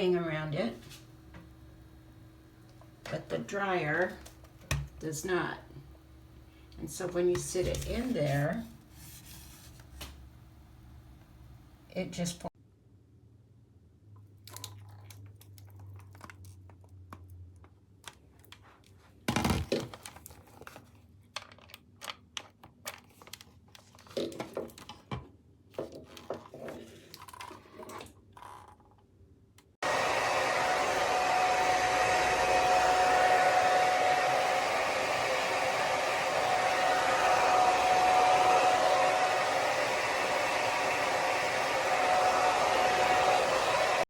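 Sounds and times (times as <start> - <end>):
hair dryer running: 0.0 - 8.8, 29.8 - 44.0.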